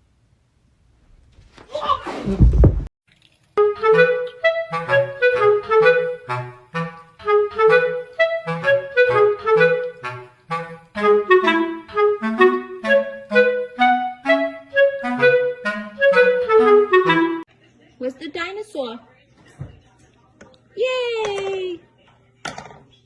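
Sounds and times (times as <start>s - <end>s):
bouncy background music: 3.6s - 17.5s.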